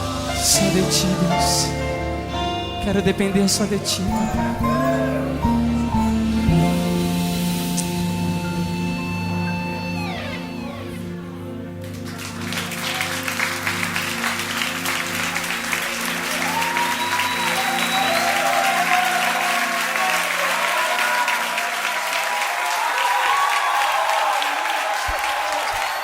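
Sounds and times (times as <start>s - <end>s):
sustained keyboard pad chord: 0.0s - 21.5s
audience applauding: 10.0s - 26.0s.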